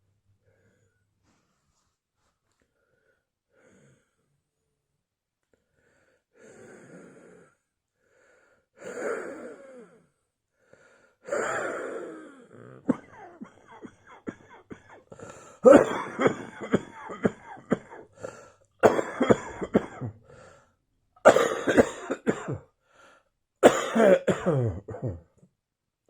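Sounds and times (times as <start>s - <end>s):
person breathing heavily with wheeze: 2.7s - 4.3s, 5.6s - 20.8s, 22.8s - 23.3s.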